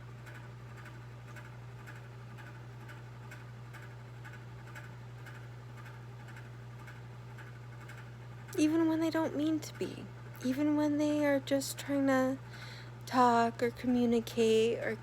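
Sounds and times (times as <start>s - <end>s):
steady low hum: 0.0s - 15.0s
faint regular ticking: 0.2s - 8.6s.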